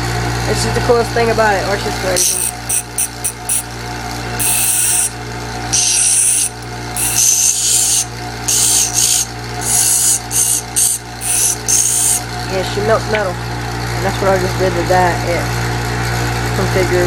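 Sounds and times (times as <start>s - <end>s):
bench grinder motor hum: 0.0s - 16.1s
metal grinding rasps: 2.0s - 3.7s, 4.4s - 12.3s.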